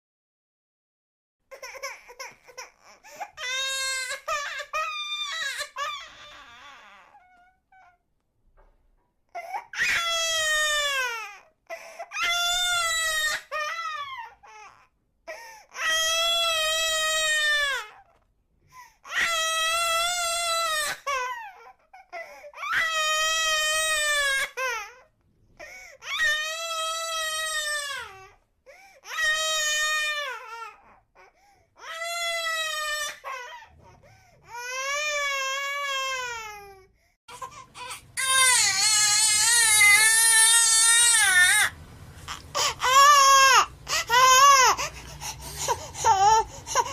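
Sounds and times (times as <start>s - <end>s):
baby crying: 1.5s - 8.0s, 9.3s - 18.2s, 19.0s - 25.1s, 34.4s - 46.9s.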